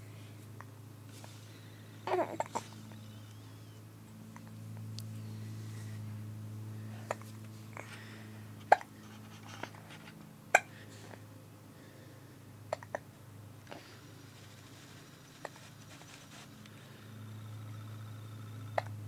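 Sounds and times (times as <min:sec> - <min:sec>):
steady low hum: 0:00.0 - 0:19.0
baby hiccupping: 0:02.0 - 0:02.8, 0:08.7 - 0:08.9, 0:12.7 - 0:13.0
baby hiccuping: 0:02.1 - 0:02.6.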